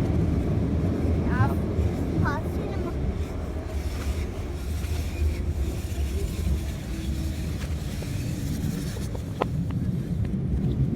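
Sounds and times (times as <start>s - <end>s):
underground train rumbling: 0.0s - 10.9s.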